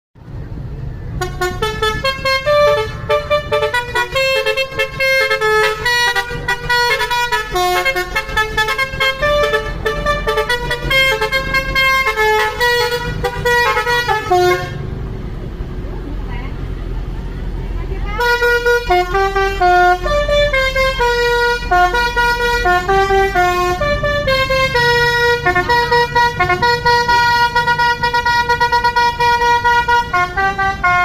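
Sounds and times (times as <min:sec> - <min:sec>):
multi-tone air horn tune: 0:01.2 - 0:14.8, 0:18.1 - 0:31.0
low rumble: 0:14.4 - 0:20.6.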